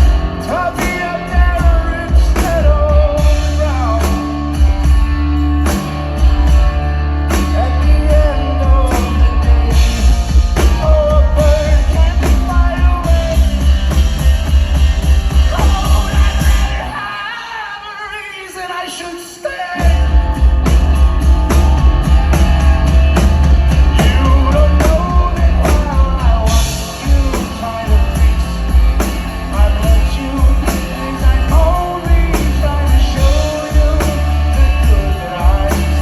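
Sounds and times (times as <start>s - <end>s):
heavy bass: 0.0s - 17.1s, 19.8s - 36.0s
drums: 0.0s - 36.0s.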